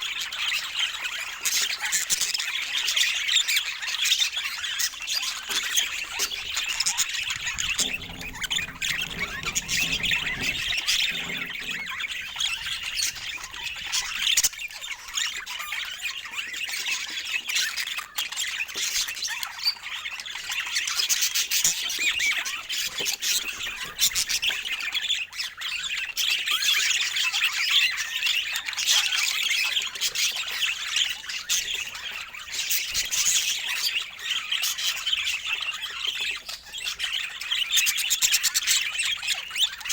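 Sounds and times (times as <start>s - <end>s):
budgerigars chattering and warbling: 0.0s - 26.4s.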